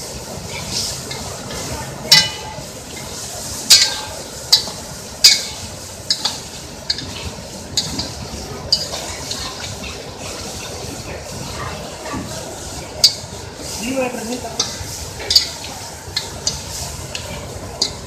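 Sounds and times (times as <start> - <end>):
cooking hiss: 0.0 - 18.0
metal spoon clinking on pot: 14.6 - 15.6.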